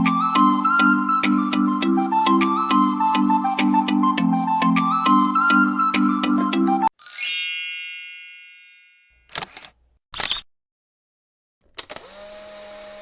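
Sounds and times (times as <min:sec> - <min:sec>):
background music: 0:00.0 - 0:07.5
bright chime: 0:07.0 - 0:09.2
short clicks: 0:09.3 - 0:10.5.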